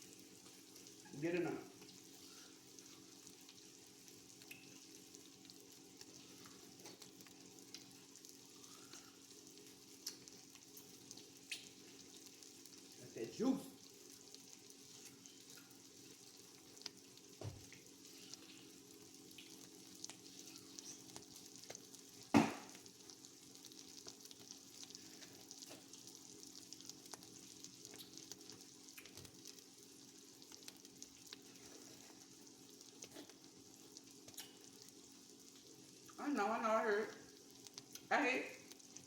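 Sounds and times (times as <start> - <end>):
food sizzling in butter: 0.0 - 39.0
sharp knock: 22.4 - 22.7.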